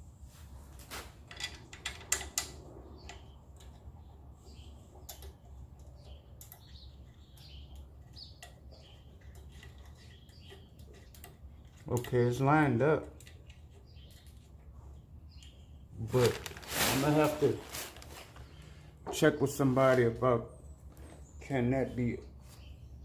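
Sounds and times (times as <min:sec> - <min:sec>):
metal parts clicking and tapping: 0:01.3 - 0:03.9, 0:05.0 - 0:14.5.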